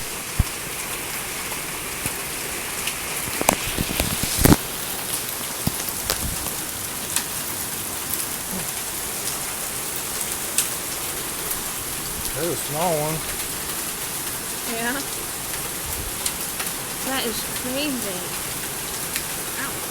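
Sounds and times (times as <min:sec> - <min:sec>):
heavy rain hissing: 0:00.0 - 0:19.9
hailstones striking hard surfaces: 0:02.9 - 0:07.3.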